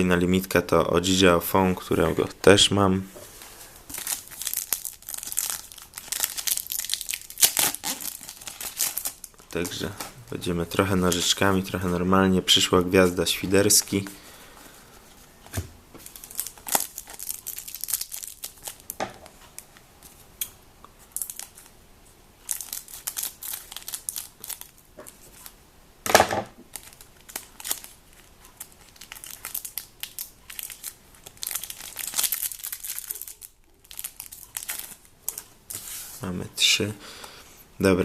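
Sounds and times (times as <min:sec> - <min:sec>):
wrappers crinkling and tearing: 0:03.6 - 0:11.9, 0:16.0 - 0:19.0, 0:21.1 - 0:21.8, 0:22.4 - 0:25.6, 0:26.7 - 0:36.1.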